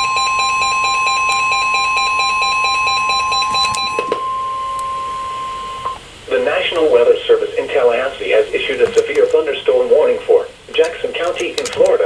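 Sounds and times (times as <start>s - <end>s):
rapidly pulsing electronic beep: 0.0s - 6.0s
steady alarm tone: 0.0s - 9.2s.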